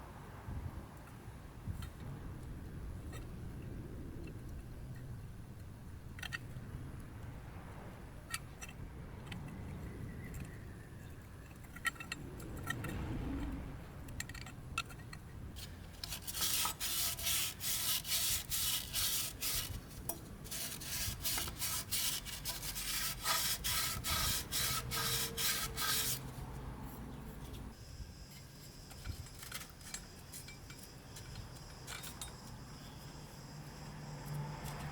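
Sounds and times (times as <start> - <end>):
rubbing on a hard surface: 15.6 - 19.9, 20.5 - 27.8.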